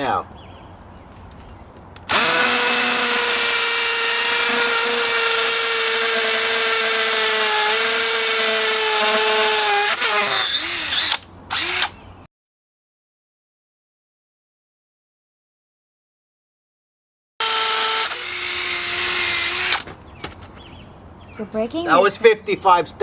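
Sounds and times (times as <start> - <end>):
hammer drill boring into stone: 2.1 - 12.0, 17.4 - 19.9.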